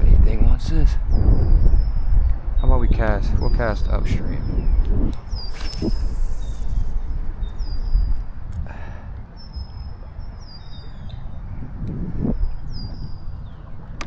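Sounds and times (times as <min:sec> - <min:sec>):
steady low rumble: 0:00.0 - 0:14.0
songbird whistling: 0:05.3 - 0:08.2.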